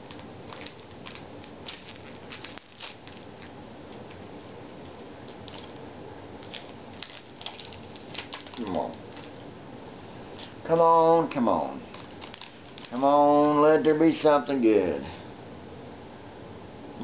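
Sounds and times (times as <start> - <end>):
cards being handled: 0.0 - 4.2, 6.4 - 9.4, 11.8 - 13.0
wrapper crinkling: 0.0 - 4.2, 5.3 - 5.8, 6.4 - 9.4, 11.8 - 13.0.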